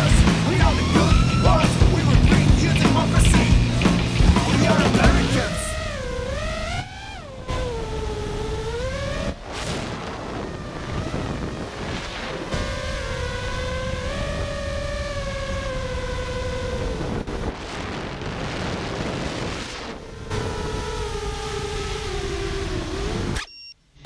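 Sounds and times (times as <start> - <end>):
drone motors whining: 0.0 - 9.4
wind rumble on microphone: 5.8 - 22.8.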